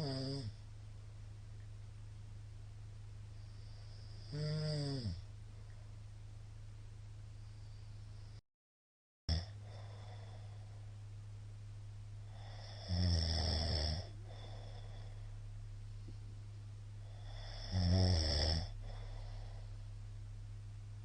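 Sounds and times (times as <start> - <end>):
man snoring: 0.0 - 0.6, 3.4 - 5.2, 9.3 - 10.6, 12.3 - 15.2, 17.0 - 19.8
steady low hum: 0.0 - 8.4, 9.4 - 21.0.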